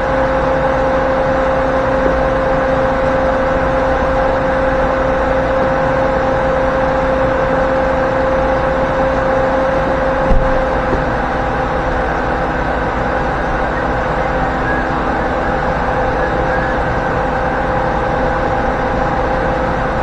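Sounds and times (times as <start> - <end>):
car engine drone: 0.0 - 20.0
short knock: 10.2 - 11.1.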